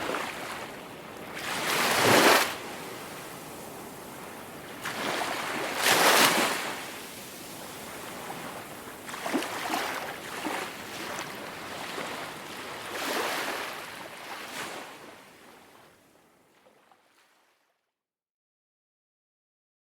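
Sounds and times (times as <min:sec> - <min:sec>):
ocean waves breaking on shore: 0:00.0 - 0:15.9.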